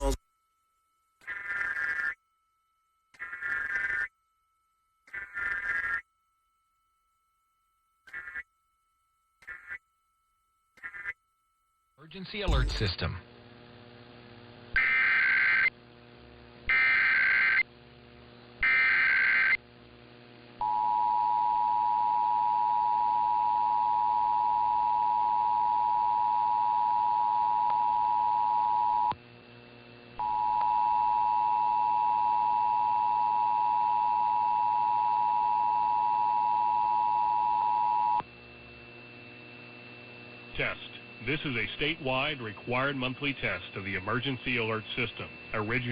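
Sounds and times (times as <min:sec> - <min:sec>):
data burst tones: 0:01.2 - 0:02.2, 0:03.2 - 0:04.1, 0:05.1 - 0:06.1.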